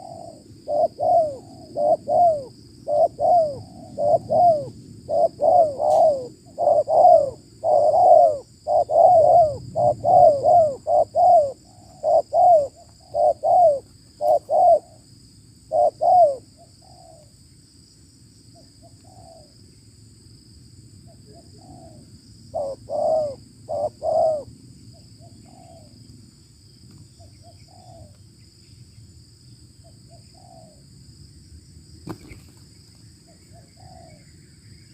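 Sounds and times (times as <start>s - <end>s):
doves cooing: 0.0s - 15.1s, 15.7s - 17.3s, 18.8s - 19.5s, 21.1s - 24.5s, 25.2s - 26.0s, 27.2s - 28.2s, 30.1s - 30.8s, 33.3s - 34.3s.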